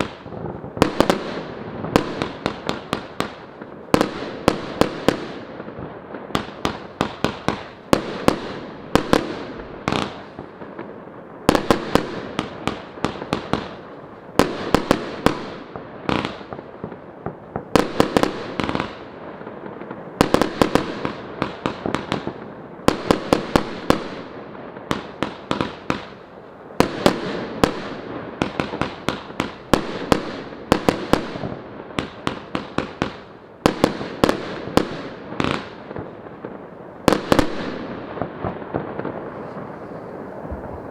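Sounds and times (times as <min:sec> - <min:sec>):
crackling firework trails: 0:00.0 - 0:40.9
fireworks bursts: 0:00.0 - 0:40.9
fireworks launch thumps: 0:39.4 - 0:40.9.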